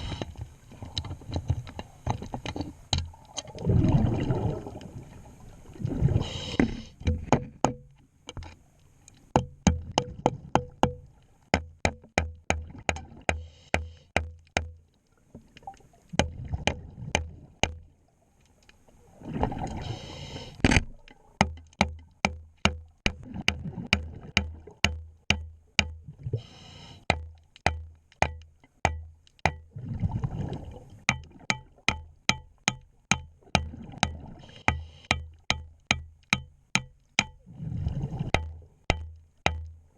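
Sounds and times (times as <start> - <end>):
regulator exhaled bubbles: 3.5 - 7.0
sharp clicks and low knocks: 7.0 - 8.5, 31.0 - 37.4, 38.3 - 39.8.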